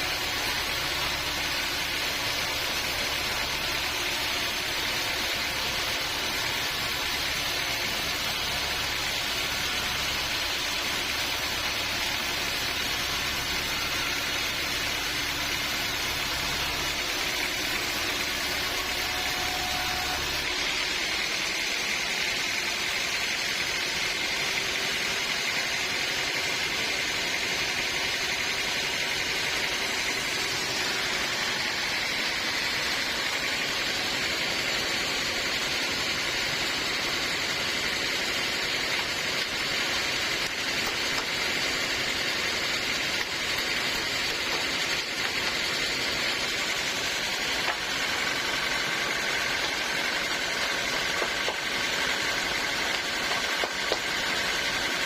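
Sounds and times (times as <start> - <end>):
high saw whine: 0.0 - 55.0
sawmill machine drone: 0.0 - 55.0.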